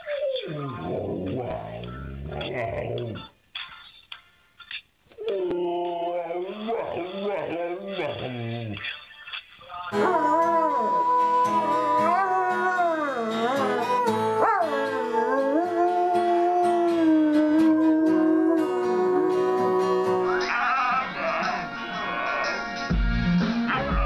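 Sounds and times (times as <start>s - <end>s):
music: 0.0s - 24.0s
dog howling: 5.2s - 8.7s, 9.9s - 21.4s.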